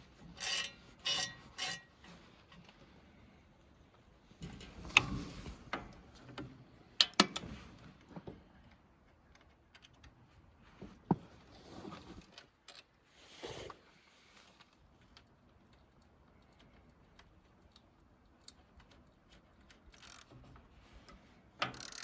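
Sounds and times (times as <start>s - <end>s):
tools clicking and knocking: 18.4s - 20.4s, 21.6s - 22.0s.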